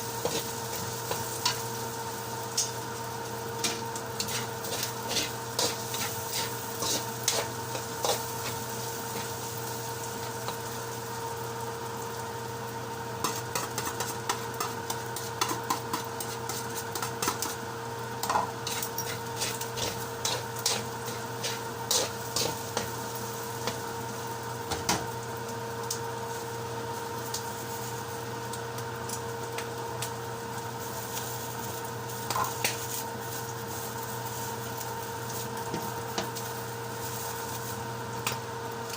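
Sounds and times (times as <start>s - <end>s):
steady hum: 0.0s - 12.0s
vegetables sizzling in a pan: 0.0s - 38.9s
utensil scraping a pan: 3.6s - 9.3s, 18.6s - 22.9s.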